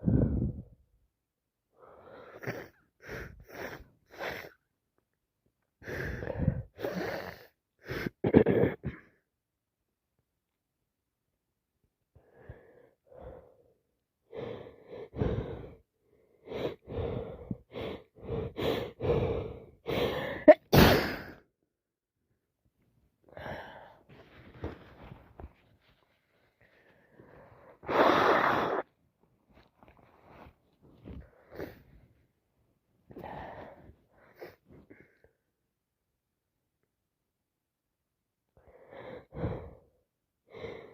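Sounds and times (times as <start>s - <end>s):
gasping wheezy in-breaths: 1.8s - 4.6s, 5.8s - 8.2s, 12.2s - 21.4s, 30.3s - 32.1s, 33.1s - 35.4s
person sneezing: 20.5s - 21.4s, 27.8s - 28.8s
small sniffs: 27.7s - 28.9s.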